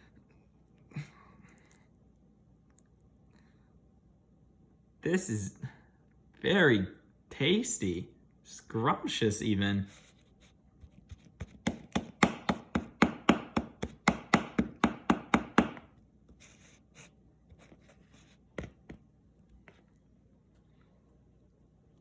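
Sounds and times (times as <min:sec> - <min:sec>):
knife chopping on a plate: 0:11.4 - 0:15.9.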